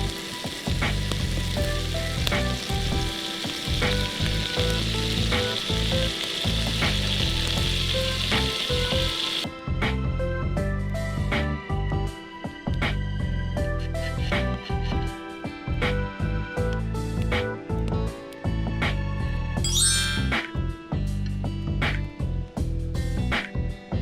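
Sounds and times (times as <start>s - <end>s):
sizzling hiss: 0.0s - 9.5s
background music with steady beat: 0.0s - 24.0s.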